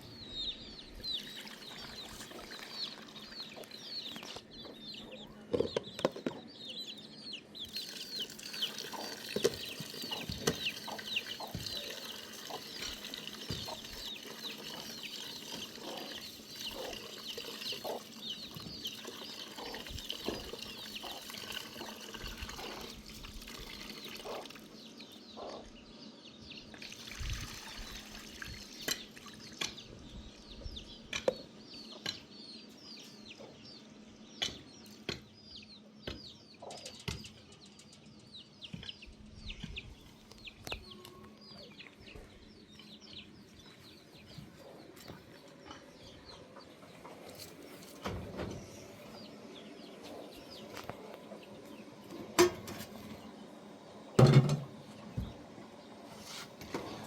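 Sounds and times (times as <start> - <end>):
chicks cheeping: 0.0 - 23.0, 24.0 - 28.0, 29.5 - 52.3
chickens clucking: 0.8 - 23.0, 23.6 - 26.0, 28.8 - 57.0
dripping and trickling water: 1.2 - 3.7, 7.7 - 24.8, 26.7 - 29.8.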